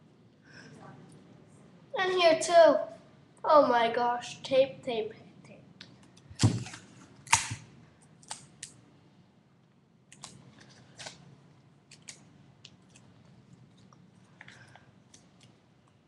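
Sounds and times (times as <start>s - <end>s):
adhesive tape tearing: 6.4s - 7.6s.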